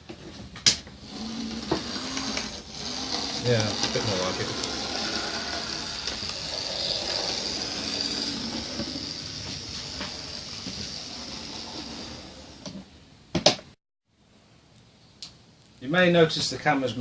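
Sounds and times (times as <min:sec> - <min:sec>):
model train whirring rattle: 0:01.1 - 0:12.7.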